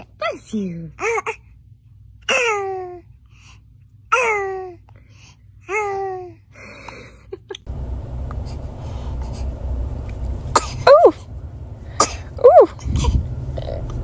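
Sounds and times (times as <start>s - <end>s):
low rumble: 7.7s - 14.0s
baby sneezing: 10.5s - 11.2s, 12.0s - 13.2s.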